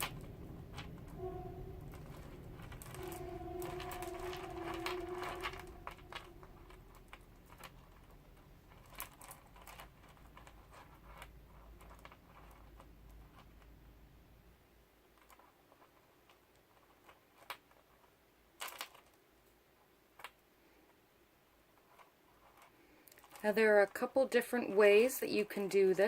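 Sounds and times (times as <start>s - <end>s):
faint steady tone: 0.0s - 7.6s.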